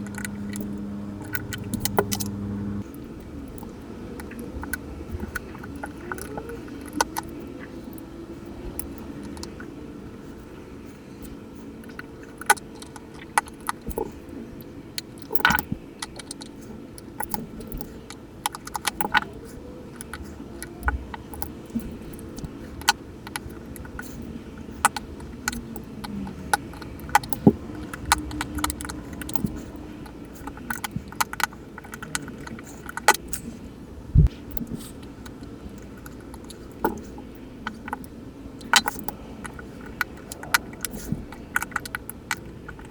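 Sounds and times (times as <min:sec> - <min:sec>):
low steady background hum: 0:00.0 - 0:42.9
small metallic clicks and taps: 0:15.0 - 0:33.6, 0:34.2 - 0:42.9.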